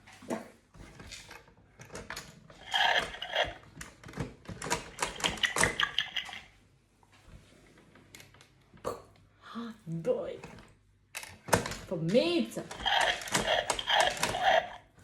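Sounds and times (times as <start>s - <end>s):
plastic game pieces clicking: 2.7s - 3.6s, 4.6s - 6.5s, 12.7s - 14.8s.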